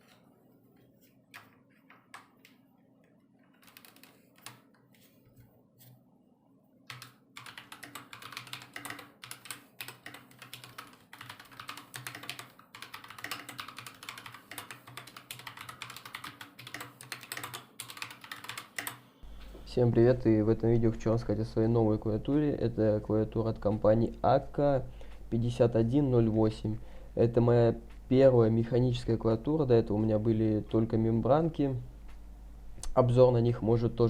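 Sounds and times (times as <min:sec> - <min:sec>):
mechanical keyboard typing: 0:03.4 - 0:04.7, 0:06.9 - 0:19.0.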